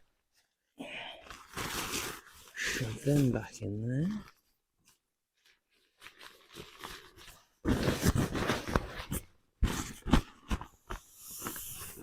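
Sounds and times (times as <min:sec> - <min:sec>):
camping kit rustling in a bag: 0:04.9 - 0:10.2.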